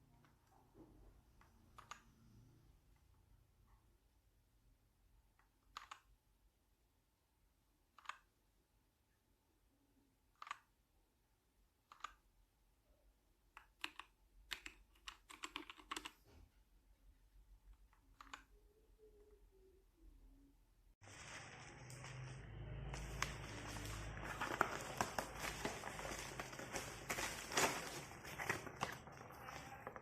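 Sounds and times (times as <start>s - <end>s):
mechanical keyboard typing: 1.7s - 2.1s, 5.6s - 6.2s, 7.9s - 8.4s, 10.3s - 10.7s, 11.8s - 12.3s, 13.6s - 16.2s, 17.8s - 18.6s.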